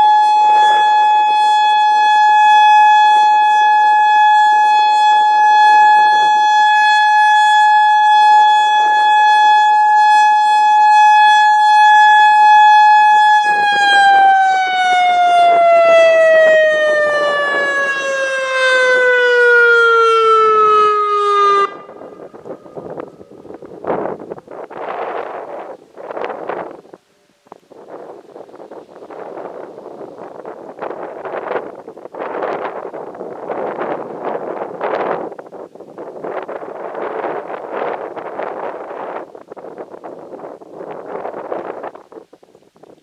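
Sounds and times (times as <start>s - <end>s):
electronic warning siren: 0.0s - 24.2s
wind buffeting microphone: 0.0s - 43.0s.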